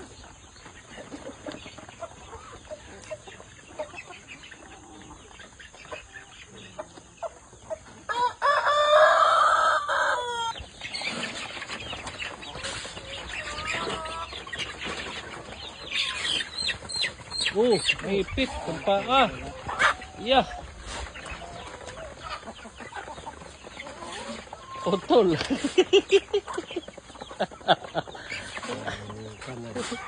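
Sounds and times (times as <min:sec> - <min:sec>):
chickens clucking: 0:00.0 - 0:30.0
rooster crowing: 0:08.1 - 0:10.6.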